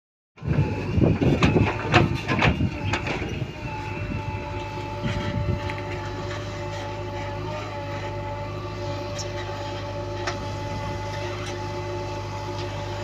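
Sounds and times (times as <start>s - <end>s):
diesel engine running: 0.4s - 13.0s.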